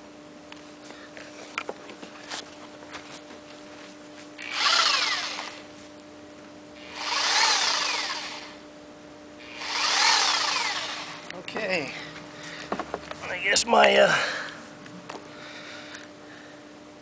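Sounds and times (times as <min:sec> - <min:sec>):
reciprocating saw motor surging: 0:04.4 - 0:05.6, 0:06.8 - 0:08.6, 0:09.4 - 0:11.3.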